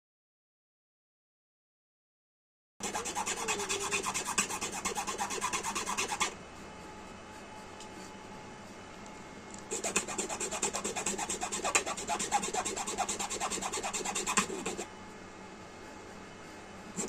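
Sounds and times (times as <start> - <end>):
rapid rasping scraping strokes: 2.8 - 6.3, 9.7 - 14.8.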